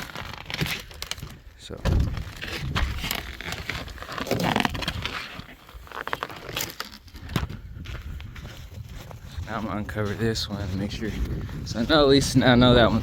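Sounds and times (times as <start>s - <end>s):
snow crunching and rustling: 7.8s - 13.0s.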